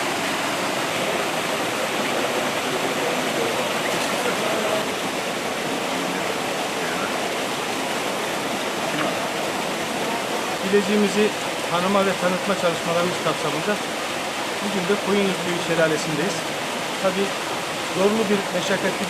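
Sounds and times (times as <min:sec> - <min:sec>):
water pouring over rocks: 0:00.0 - 0:19.0.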